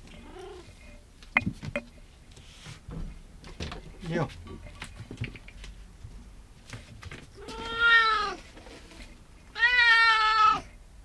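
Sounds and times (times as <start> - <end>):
cat meowing: 7.4 - 8.4, 9.5 - 10.7.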